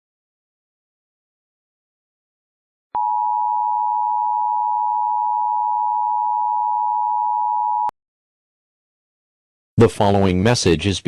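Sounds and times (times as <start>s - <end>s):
electronic alarm tone: 3.0s - 7.9s.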